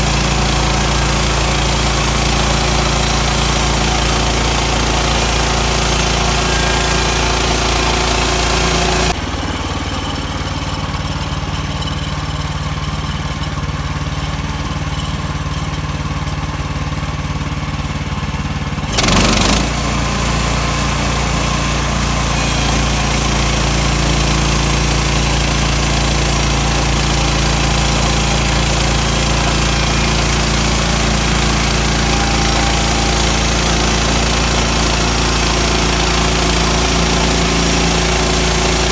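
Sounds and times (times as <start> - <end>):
saw blade cutting log: 0.0 - 9.2, 19.0 - 38.9
sawmill engine running: 0.0 - 38.9.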